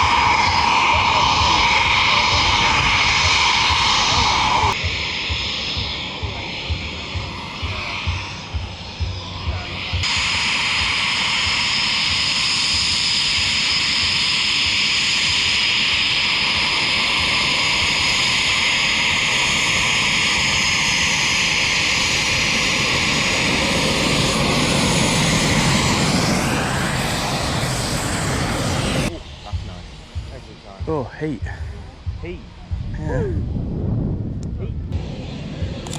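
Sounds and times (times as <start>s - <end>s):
jet engine roar and turbine whine: 0.0s - 35.9s.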